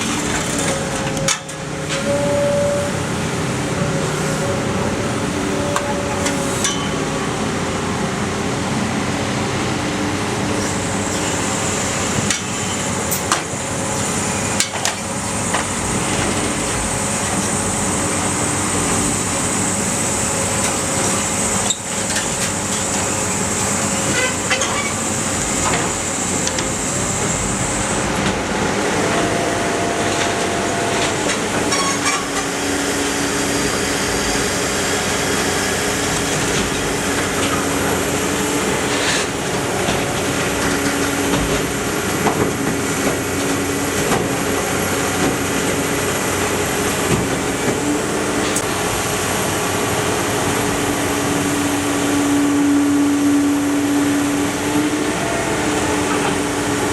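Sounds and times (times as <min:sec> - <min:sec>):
sharp metal knocks and clanks: 0:06.6 - 0:07.0.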